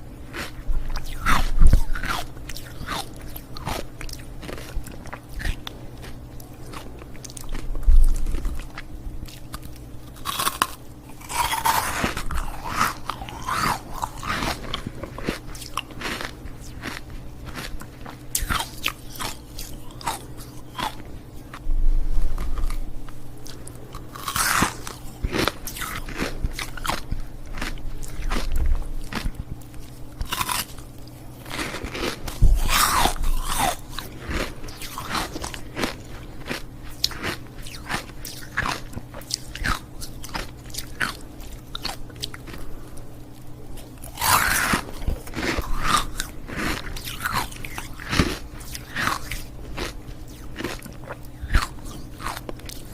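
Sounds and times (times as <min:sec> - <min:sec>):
ice cubes crunched by teeth: 0:09.3 - 0:21.0, 0:23.5 - 0:29.3, 0:30.2 - 0:30.8, 0:31.5 - 0:42.6, 0:44.0 - 0:52.9.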